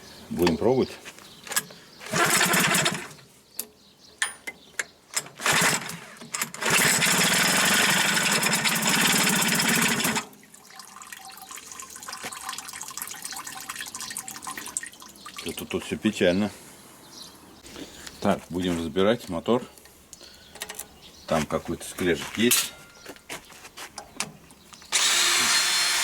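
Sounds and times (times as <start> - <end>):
outboard motor pull start: 2.1 - 3.2, 5.4 - 10.3
outboard motor running: 6.6 - 10.2.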